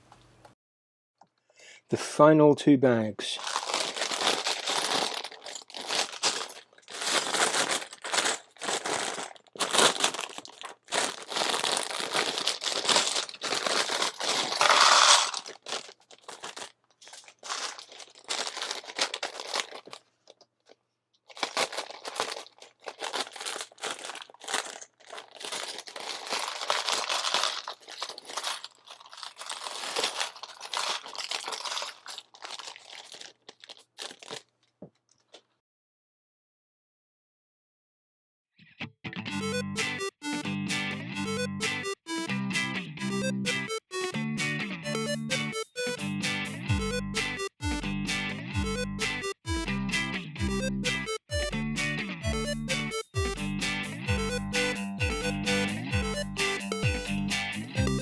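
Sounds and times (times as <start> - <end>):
plastic bag crinkling: 3.4 - 35.6.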